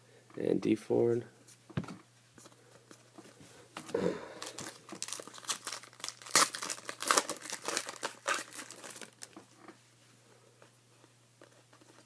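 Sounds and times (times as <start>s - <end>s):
plastic foil wrapper crinkling: 4.3s - 9.4s.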